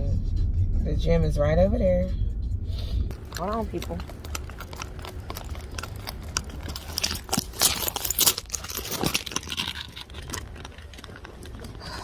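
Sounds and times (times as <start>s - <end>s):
steady low rumble: 0.0s - 12.0s
handling clicks rustles and scrapes: 3.1s - 12.0s.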